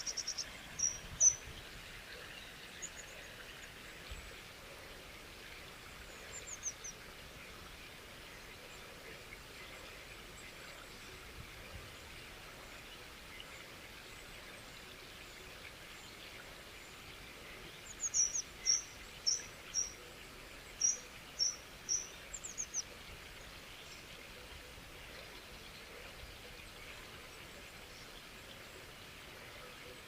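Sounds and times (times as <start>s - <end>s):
faint hiss of water: 0.0s - 30.0s.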